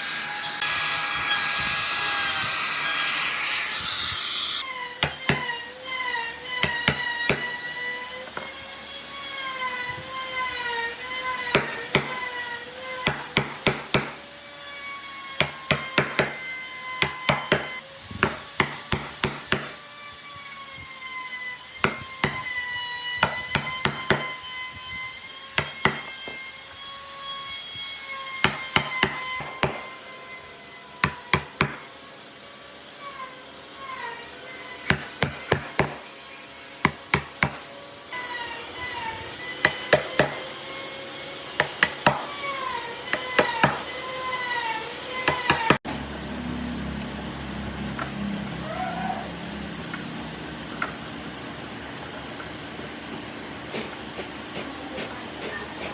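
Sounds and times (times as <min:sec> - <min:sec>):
hammering on wood: 0:05.0 - 0:05.6, 0:06.6 - 0:07.6, 0:11.4 - 0:12.4, 0:13.0 - 0:14.2, 0:15.4 - 0:19.8, 0:21.8 - 0:22.6, 0:23.2 - 0:24.4, 0:25.5 - 0:26.4, 0:28.4 - 0:30.0, 0:31.0 - 0:31.8, 0:34.8 - 0:36.0, 0:36.8 - 0:37.7, 0:39.6 - 0:40.5, 0:41.6 - 0:44.0, 0:45.2 - 0:45.8
wavering pitched tone: 0:45.9 - 0:51.4.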